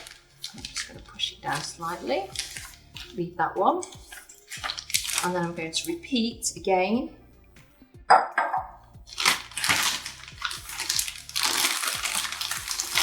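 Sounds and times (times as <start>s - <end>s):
plastic piping bag crinkling: 0.0s - 3.2s, 3.9s - 5.6s, 9.0s - 13.0s.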